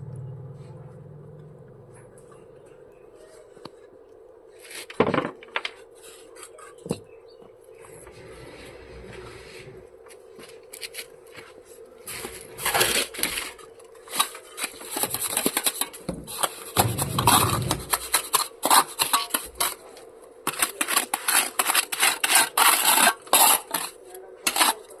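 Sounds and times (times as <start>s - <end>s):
trowel scraping mortar: 12.1s - 19.9s, 20.5s - 25.0s.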